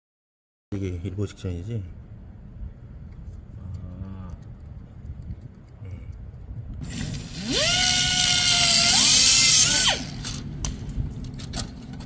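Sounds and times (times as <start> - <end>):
high-speed power tool whining: 6.8 - 10.5.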